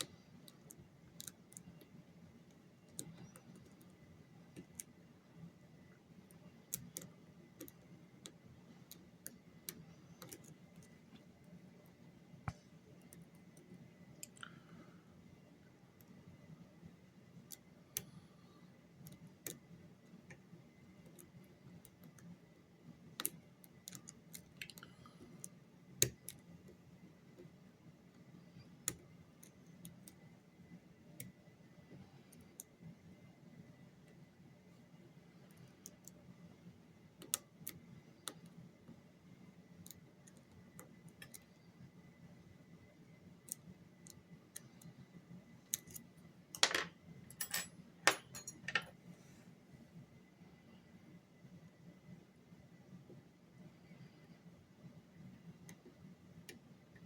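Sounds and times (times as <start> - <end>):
lock pick clicking against pins: 45.7 - 48.9.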